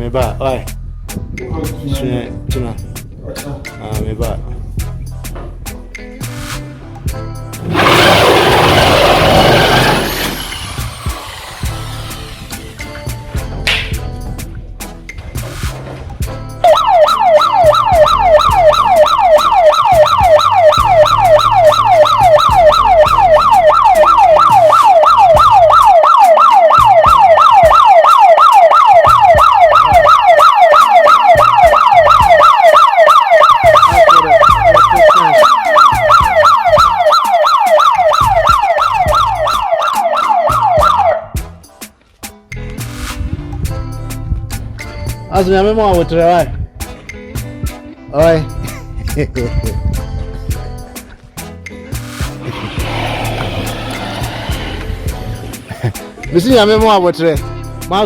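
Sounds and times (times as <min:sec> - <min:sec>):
electronic alarm siren wailing: 0:07.6 - 0:12.0, 0:16.6 - 0:41.5.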